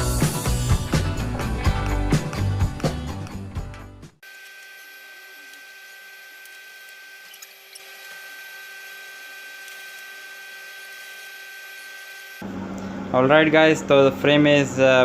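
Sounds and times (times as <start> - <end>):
small motor whining: 4.2 - 12.4.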